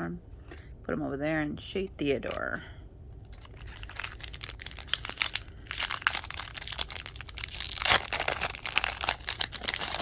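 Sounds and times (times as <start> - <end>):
wrapper crackling and tearing: 3.3 - 10.0.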